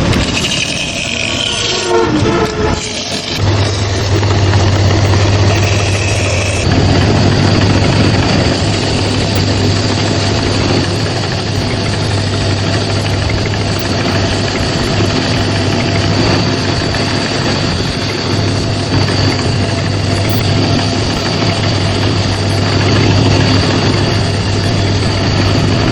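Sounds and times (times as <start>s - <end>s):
power tool motor humming: 0.0s - 25.9s.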